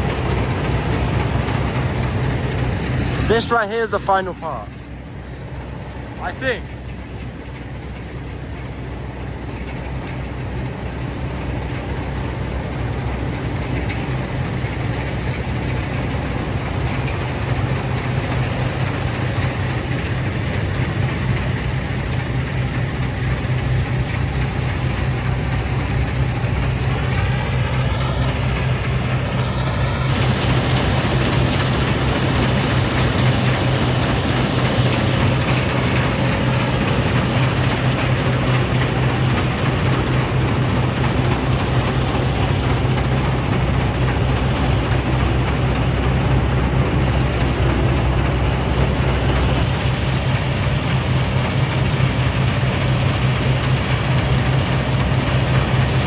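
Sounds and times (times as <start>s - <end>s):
combine harvester engine hum: 0.0s - 56.0s.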